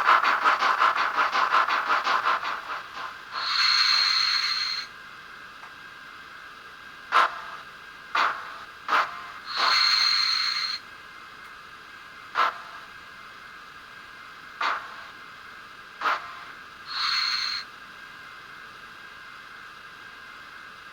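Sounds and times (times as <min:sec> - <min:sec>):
steam hisses from speaker: 0:00.0 - 0:04.9, 0:08.2 - 0:10.8, 0:16.0 - 0:17.7
steam locomotive chuffs: 0:00.0 - 0:04.9, 0:07.1 - 0:10.8, 0:12.3 - 0:13.0, 0:14.5 - 0:17.7.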